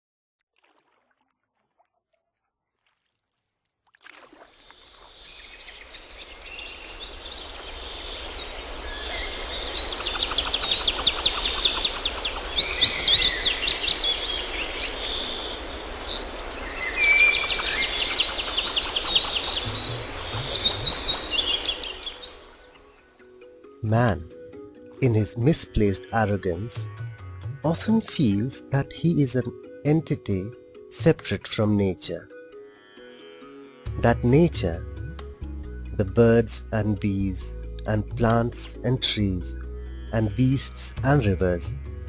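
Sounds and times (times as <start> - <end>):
songbirds chirping and trilling: 4.3 - 30.4.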